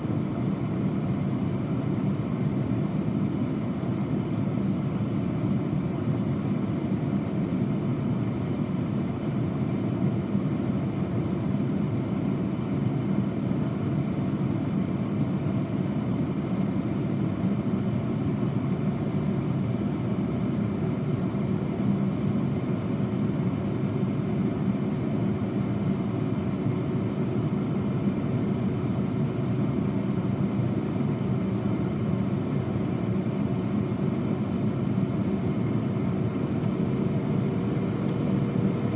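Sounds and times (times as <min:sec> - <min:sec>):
faint hum of constant tones: 0:00.0 - 0:38.9
air fryer fan whirring: 0:20.4 - 0:38.9.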